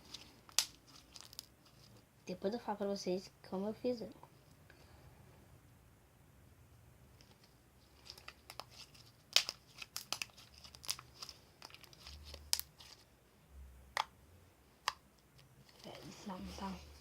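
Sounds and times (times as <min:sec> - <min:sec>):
slime crackling and popping: 0:00.4 - 0:01.6, 0:08.0 - 0:12.9.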